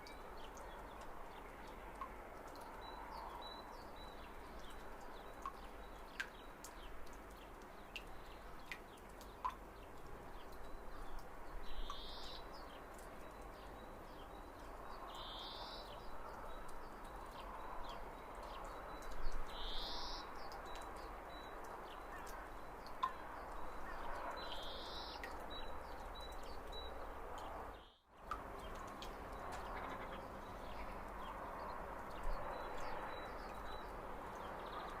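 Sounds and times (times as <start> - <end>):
distant birdsong: 10.4 - 35.0.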